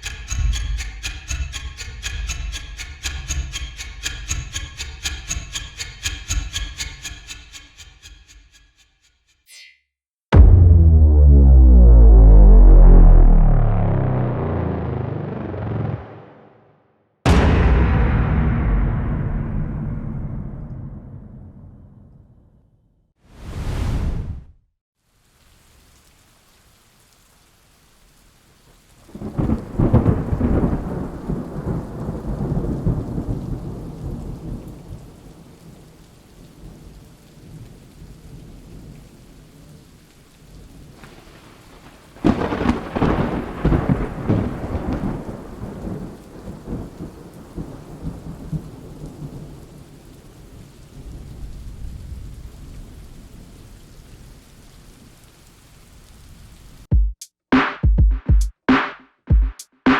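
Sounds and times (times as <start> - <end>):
thunder rumbling: 10.4 - 16.5, 17.3 - 22.3, 29.1 - 39.9, 40.6 - 54.6
steady rain: 25.0 - 56.9.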